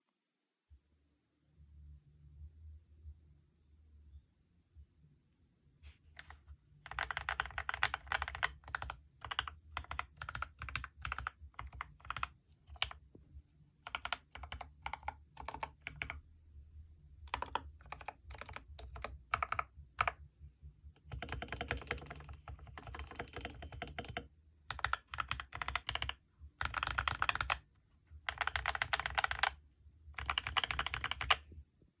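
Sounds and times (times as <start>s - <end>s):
mechanical keyboard typing: 6.2s - 13.0s, 13.8s - 16.2s, 17.3s - 20.2s, 21.0s - 29.6s, 30.2s - 31.4s.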